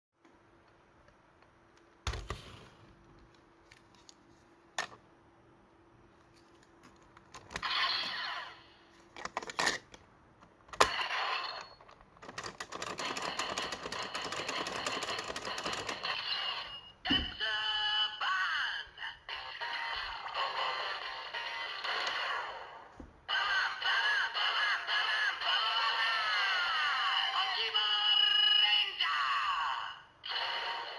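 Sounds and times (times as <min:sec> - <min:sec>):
plastic toy clicks: 0:12.2 - 0:16.1.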